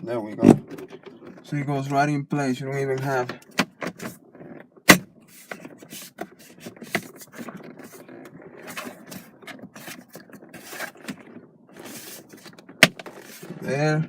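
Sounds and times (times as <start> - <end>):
parts rubbing and scraping: 2.8 - 14.0.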